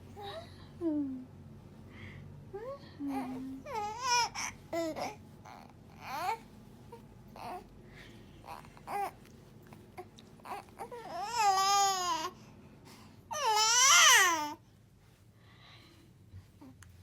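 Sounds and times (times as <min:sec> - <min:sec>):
baby cooing and babbling: 0:03.1 - 0:07.7, 0:08.5 - 0:09.2, 0:10.0 - 0:12.4, 0:13.3 - 0:14.6.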